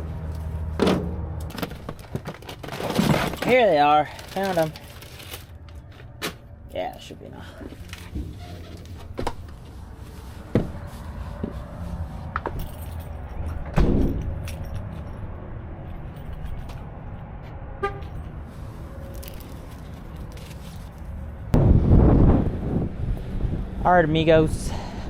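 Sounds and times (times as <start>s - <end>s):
tools and parts clinking: 12.4s - 15.3s, 19.0s - 21.1s.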